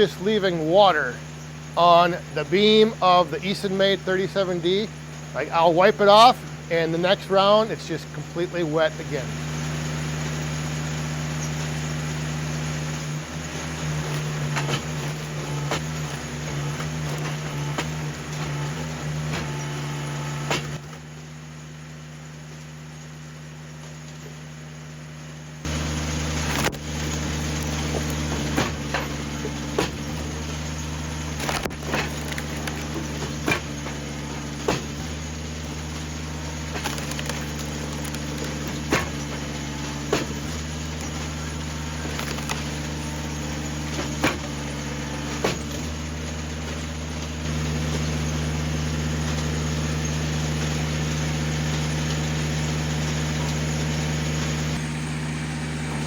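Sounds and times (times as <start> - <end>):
wood splitter engine running: 0.0 - 56.0
wood splitting knocks and cracks: 25.7 - 48.1.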